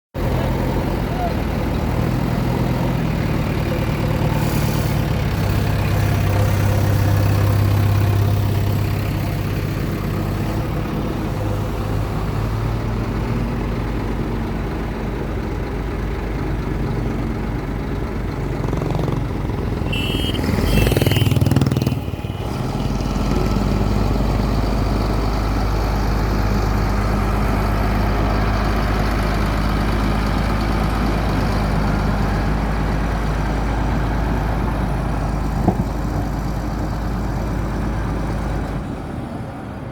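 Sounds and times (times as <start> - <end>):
digger diesel engine running: 0.2 - 39.7
short high beeps: 19.9 - 21.7.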